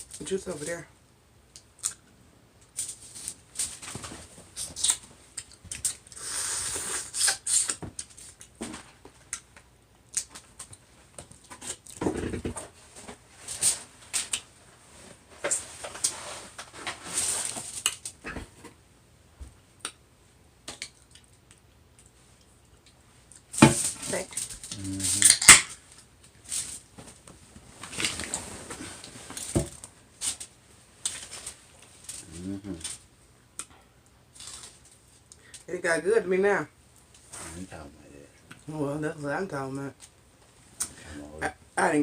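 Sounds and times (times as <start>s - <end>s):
wet chewing and smacking: 20.8s - 23.5s.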